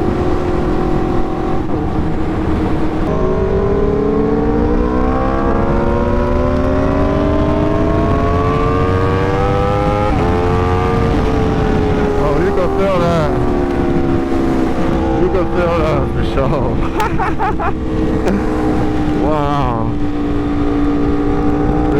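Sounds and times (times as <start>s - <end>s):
motorcycle engine accelerating: 0.0s - 21.9s.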